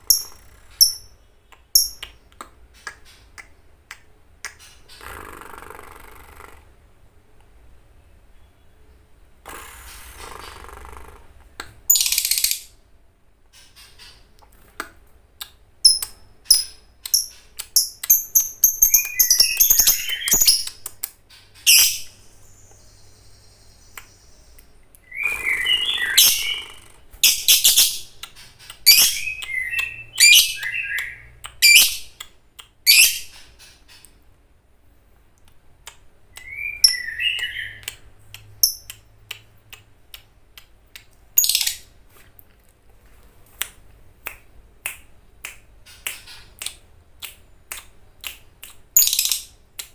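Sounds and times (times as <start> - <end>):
lovebird chirping: 0.0 - 2.2, 15.8 - 21.0, 21.6 - 34.1, 36.4 - 38.0, 38.6 - 39.0.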